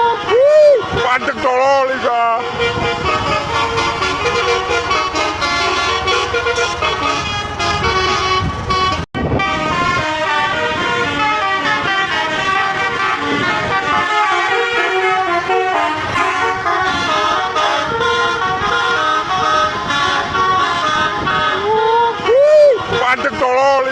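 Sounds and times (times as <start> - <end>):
bus horns playing tunes: 0.0 - 23.9.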